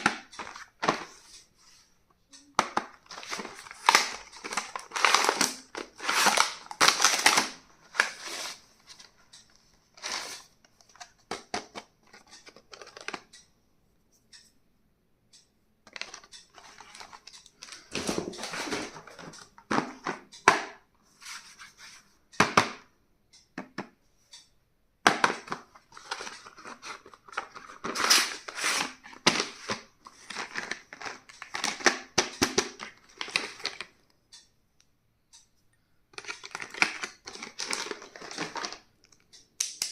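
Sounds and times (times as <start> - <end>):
small items clicking and tapping: 0.0 - 1.5, 2.3 - 13.5, 15.8 - 20.9, 23.5 - 34.5, 36.1 - 39.9
wrapping crinkling and tearing: 3.2 - 8.6.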